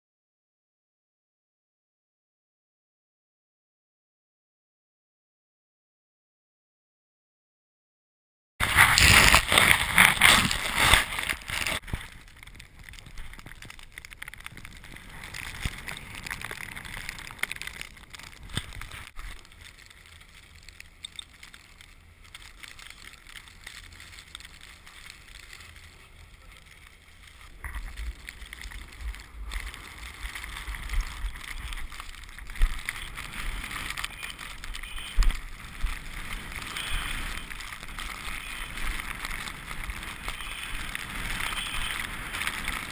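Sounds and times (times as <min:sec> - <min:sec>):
snowboard hissing through snow: 0:08.6 - 0:12.0, 0:32.8 - 0:42.9.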